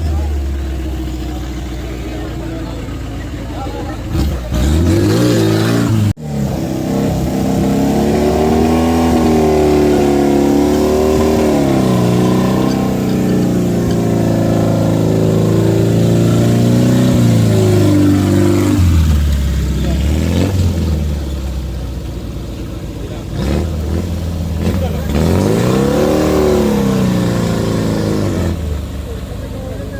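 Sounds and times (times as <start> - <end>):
buggy engine revving: 0.0 - 29.9.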